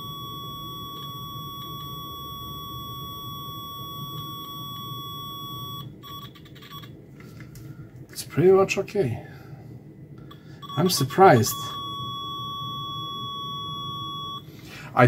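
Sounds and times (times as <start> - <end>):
multimeter continuity beep: 0.0 - 6.9, 10.3 - 14.5.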